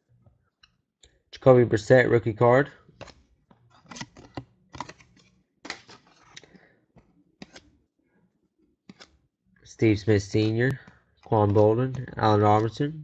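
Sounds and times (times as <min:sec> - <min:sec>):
trading cards flipped by hand: 0:03.0 - 0:07.8, 0:08.9 - 0:09.2.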